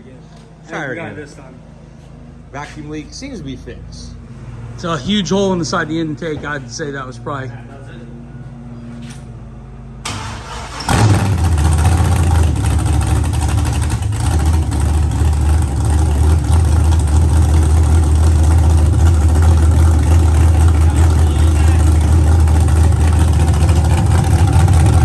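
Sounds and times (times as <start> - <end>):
engine idling: 1.1 - 25.0
starter cranking engine: 10.1 - 25.0.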